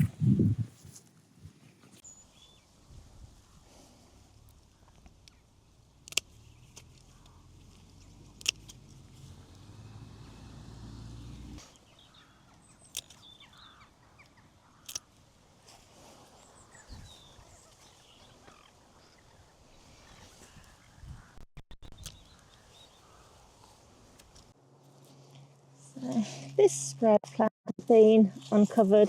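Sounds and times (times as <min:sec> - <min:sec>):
faint bird chirps: 0:02.0 - 0:03.6, 0:11.6 - 0:15.2, 0:16.2 - 0:23.8
sharp clicks: 0:04.5 - 0:09.6, 0:11.6 - 0:13.6, 0:14.2 - 0:15.2, 0:21.6 - 0:22.4.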